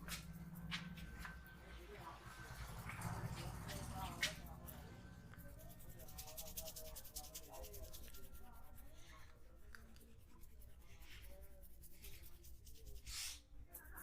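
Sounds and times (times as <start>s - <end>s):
hands rubbing during massage: 3.4s - 14.0s.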